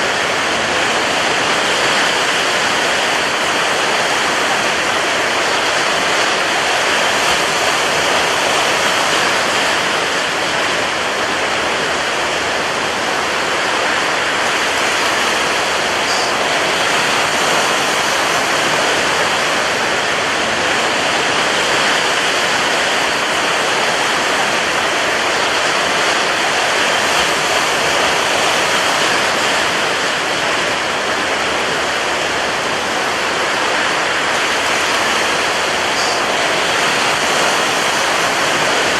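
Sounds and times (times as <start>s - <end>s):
roar of surf: 0.0s - 38.9s
strong wind: 0.0s - 38.9s.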